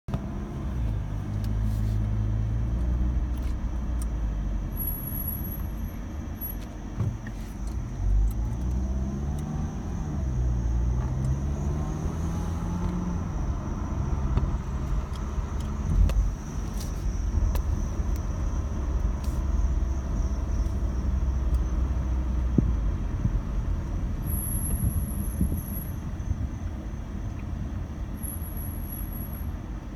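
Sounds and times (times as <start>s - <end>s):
car engine and road noise: 0.0s - 29.9s
high-pitched brake squeal: 24.2s - 26.0s, 28.2s - 29.5s.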